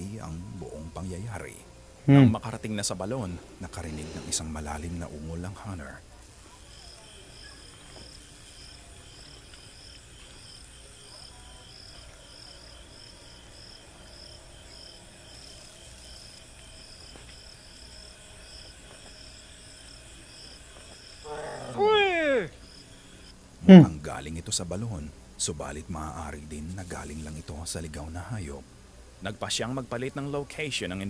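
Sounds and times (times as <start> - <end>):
crickets chirping: 0.0 - 24.9.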